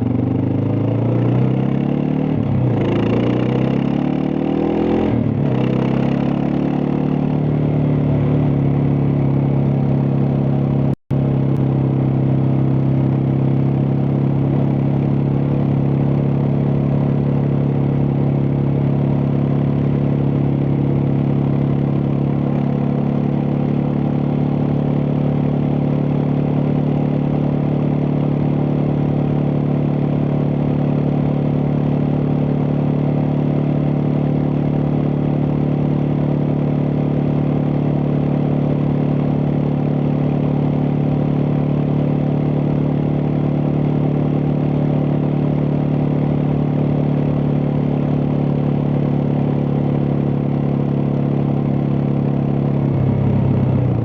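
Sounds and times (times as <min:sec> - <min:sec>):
motorcycle engine running: 0:00.0 - 0:54.0
wind and road noise: 0:00.0 - 0:54.0.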